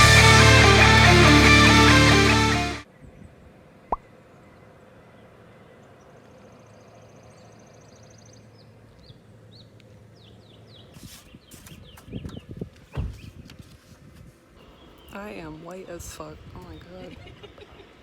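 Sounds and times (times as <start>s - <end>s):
faint outdoor ambience: 0.3s - 18.0s.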